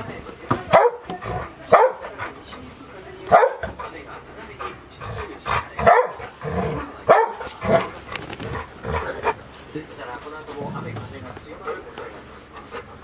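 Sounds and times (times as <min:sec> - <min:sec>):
dogs barking: 0:00.7 - 0:02.4, 0:03.3 - 0:04.0, 0:04.6 - 0:09.5.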